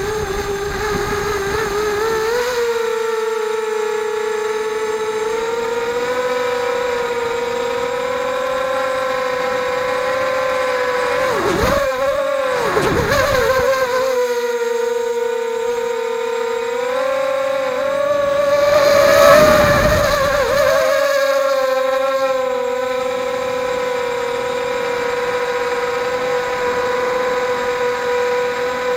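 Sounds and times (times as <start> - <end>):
quadcopter motors whining: 0.0 - 28.9.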